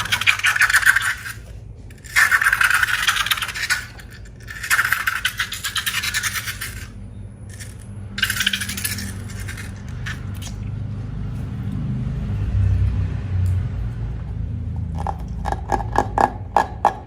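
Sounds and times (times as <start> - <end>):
crackling rattling scrape: 0.0 - 10.6
low hum: 0.0 - 16.0.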